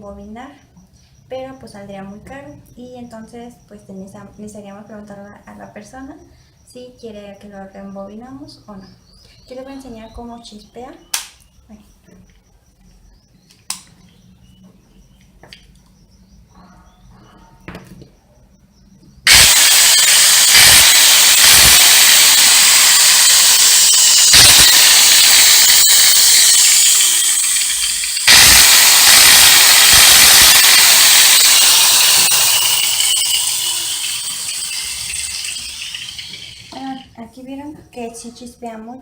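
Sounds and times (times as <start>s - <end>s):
angle grinder whining: 19.3s - 37.0s.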